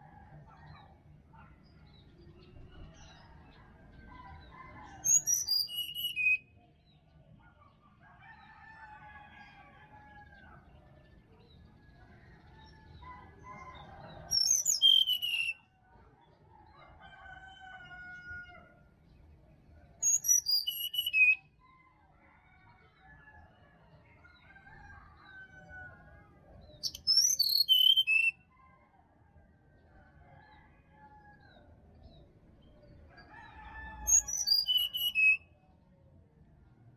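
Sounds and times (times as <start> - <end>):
bird singing high whistled notes: 5.1 - 6.4, 14.3 - 15.6, 20.0 - 21.4, 26.8 - 28.4, 34.1 - 35.5.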